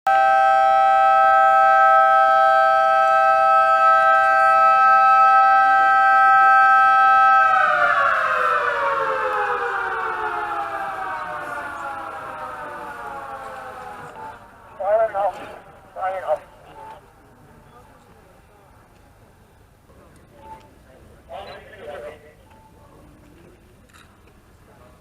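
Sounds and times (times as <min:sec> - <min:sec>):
two-tone warning siren: 0:00.1 - 0:17.2.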